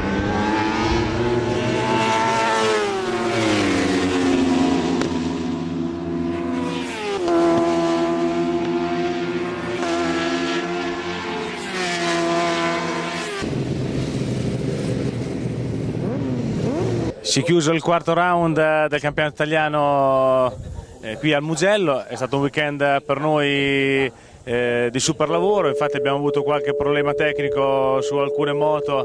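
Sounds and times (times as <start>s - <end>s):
racing motorcycle engines revving: 0.0s - 17.6s.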